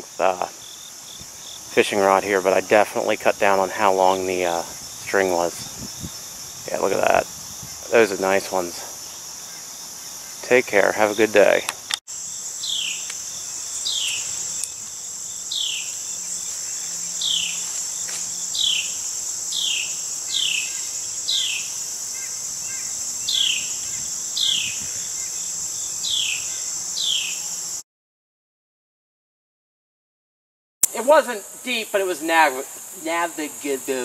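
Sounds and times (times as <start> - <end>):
insect chorus drone: 0.0 - 27.8, 30.8 - 34.0
bird chirping: 12.6 - 27.5.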